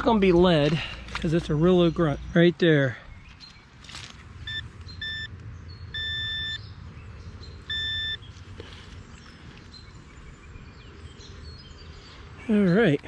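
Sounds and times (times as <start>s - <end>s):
metal detector beeps: 4.4s - 6.6s, 7.6s - 8.2s.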